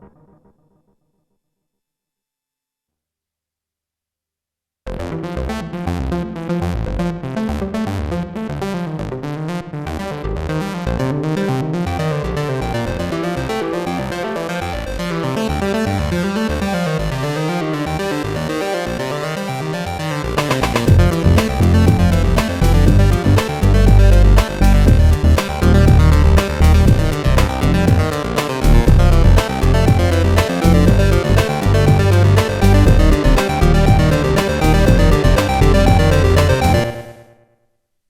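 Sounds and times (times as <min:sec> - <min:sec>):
pulsing synth bass line: 0:09.8 - 0:37.2
synthesizer note patterns: 0:11.8 - 0:37.3.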